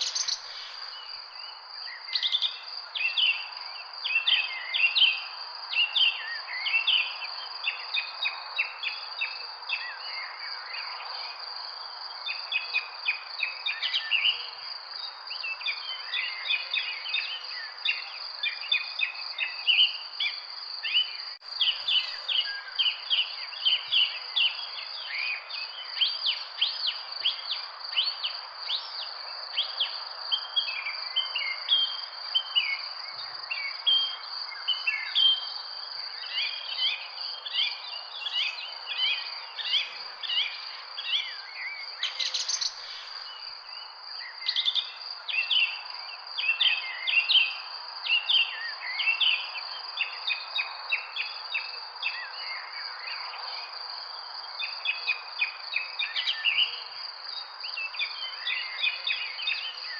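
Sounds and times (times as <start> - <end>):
birds chirping and trilling: 0.0 - 10.6, 15.3 - 29.2, 36.1 - 47.4.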